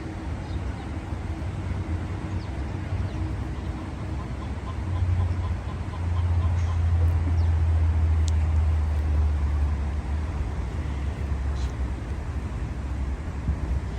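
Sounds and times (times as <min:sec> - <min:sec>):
steady low rumble: 0:00.0 - 0:13.9
faint clicks: 0:08.2 - 0:08.5.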